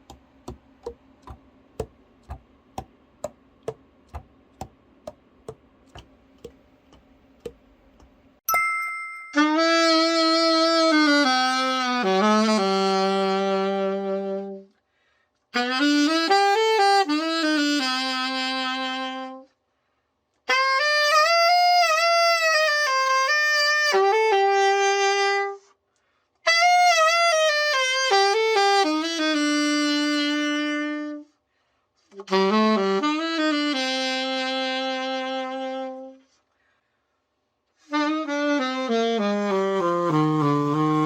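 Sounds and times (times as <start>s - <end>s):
solo saxophone: 9.4s - 14.8s, 15.5s - 19.6s, 20.4s - 25.8s, 26.4s - 31.4s, 32.0s - 36.5s, 37.7s - 41.0s.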